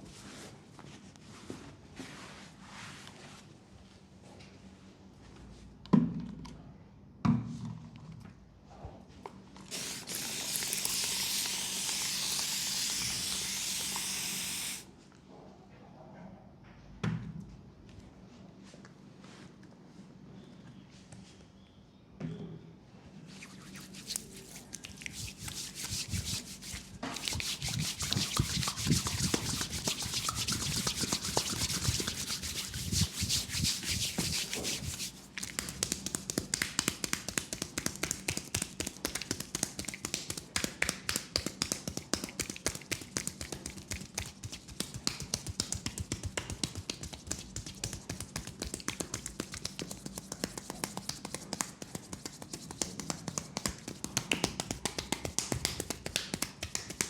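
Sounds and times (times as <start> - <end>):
hands rubbing skin: 9.7 - 14.8, 23.3 - 57.0
tapping strokes on leg: 24.1 - 57.0.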